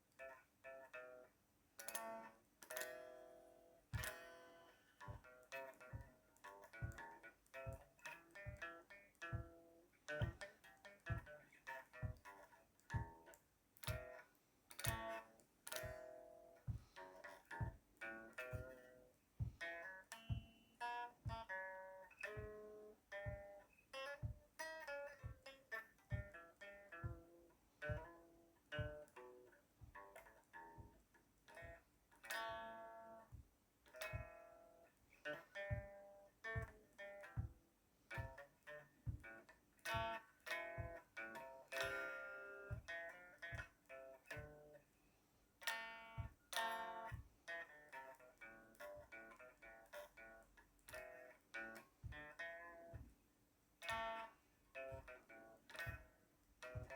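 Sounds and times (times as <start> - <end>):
acoustic guitar strummed chords: 1.8 - 44.8
low beat thump: 3.9 - 4.4, 5.0 - 14.2, 14.8 - 34.7, 35.4 - 44.8, 45.7 - 47.4, 50.8 - 53.2, 54.9 - 56.9.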